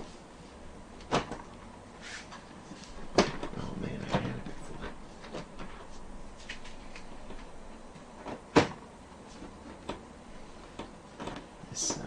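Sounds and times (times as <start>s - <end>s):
panel knocking into place: 8.5s - 8.8s.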